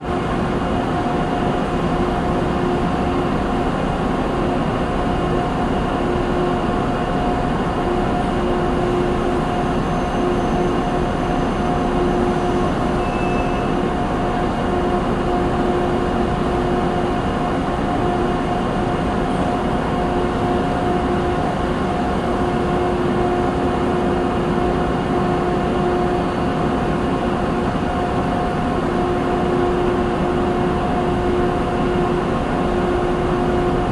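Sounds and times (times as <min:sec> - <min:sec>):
industrial machinery drone: 0:00.0 - 0:33.9.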